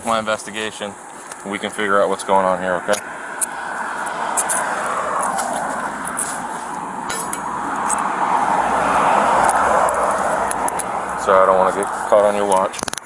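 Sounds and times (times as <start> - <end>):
traffic passing: 0.0 - 13.0
handcuffs ratcheting clicks: 9.4 - 11.0.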